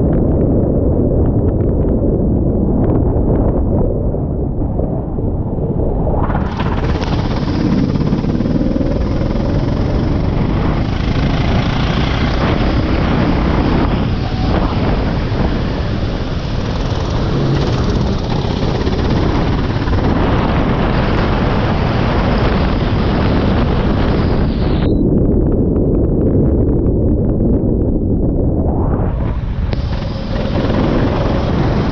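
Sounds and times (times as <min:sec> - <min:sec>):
go-kart engine running: 0:06.4 - 0:22.5, 0:29.3 - 0:31.9.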